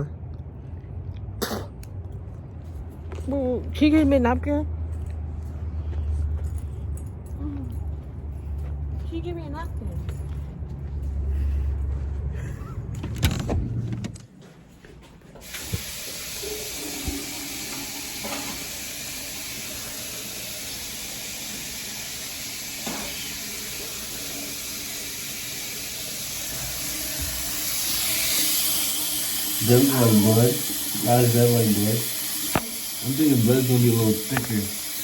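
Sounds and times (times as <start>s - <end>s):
tap water running into sink: 15.4s - 35.0s.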